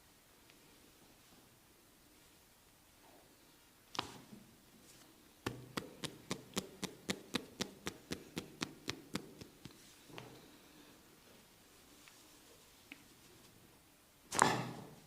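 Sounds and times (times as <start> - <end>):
percussive massage strikes: 5.4 - 9.8.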